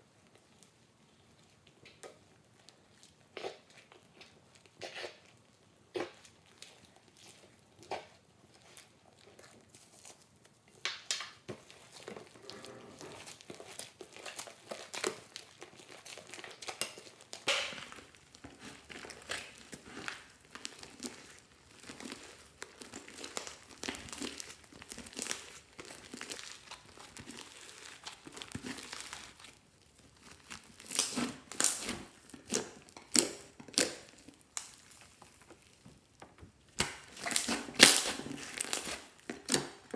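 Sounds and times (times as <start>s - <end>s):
slime crackling and clicking: 30.1s - 35.8s.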